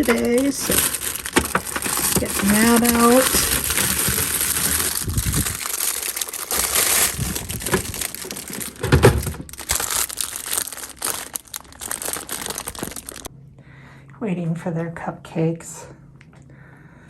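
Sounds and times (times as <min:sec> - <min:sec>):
plastic packaging crinkling: 0:00.0 - 0:13.3.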